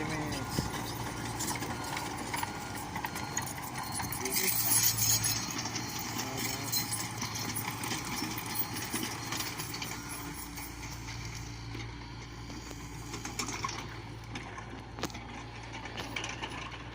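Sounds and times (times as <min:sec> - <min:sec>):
metal clanks and rattles: 0:00.0 - 0:12.0, 0:13.0 - 0:16.9
excavator engine hum: 0:00.0 - 0:16.9.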